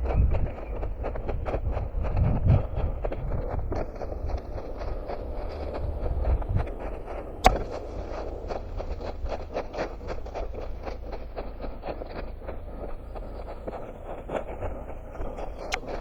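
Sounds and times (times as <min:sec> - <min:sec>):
low rumble: 0:00.0 - 0:16.0
running footsteps on forest ground: 0:00.0 - 0:16.0
sharp snap: 0:07.4 - 0:11.0.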